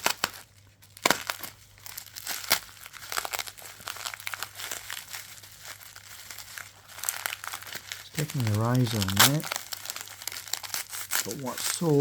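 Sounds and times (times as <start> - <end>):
packaging crinkling: 0.0 - 12.0
packaging tearing: 0.0 - 12.0.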